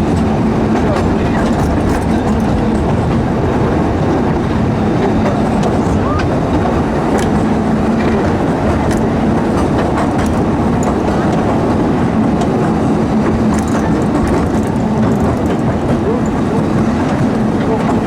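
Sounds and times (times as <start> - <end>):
constant hum: 0.0 - 18.0
train rumbling on rails: 0.0 - 18.0.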